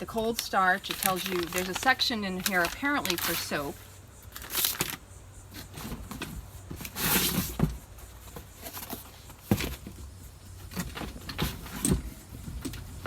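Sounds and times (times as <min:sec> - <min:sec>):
packaging rustling: 0:00.2 - 0:03.5.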